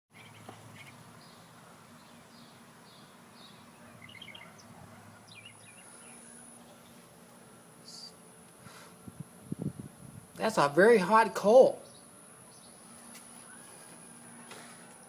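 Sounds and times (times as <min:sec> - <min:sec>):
small birds chirping: 0:00.1 - 0:08.6, 0:11.7 - 0:14.5
steady high-pitched whine: 0:00.2 - 0:15.0.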